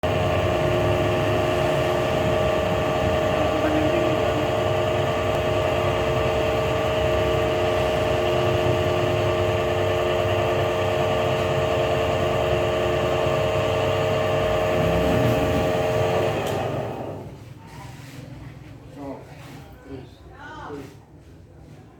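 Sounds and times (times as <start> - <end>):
machine humming with whine: 0.0 - 17.3.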